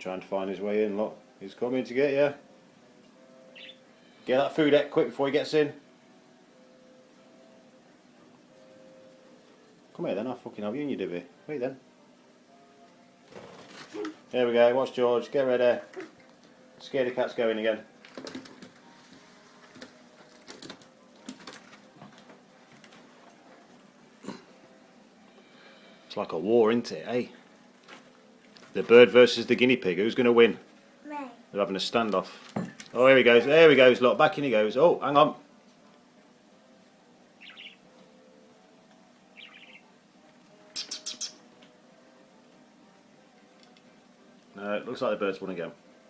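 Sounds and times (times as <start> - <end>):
budgie chirping: 3.5 - 3.8, 37.4 - 37.8, 39.3 - 39.9, 40.7 - 41.5
small pets clicking in cage: 19.7 - 21.8.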